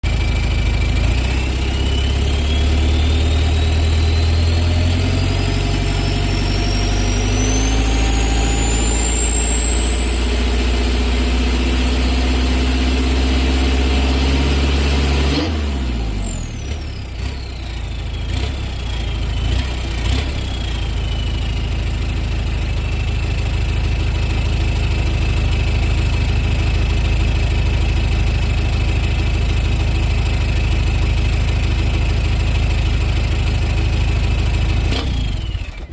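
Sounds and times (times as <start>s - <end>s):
diesel engine idling: 0.0s - 35.9s
diesel engine revving: 0.0s - 35.9s
turbo whistle: 1.3s - 14.6s, 17.4s - 22.0s.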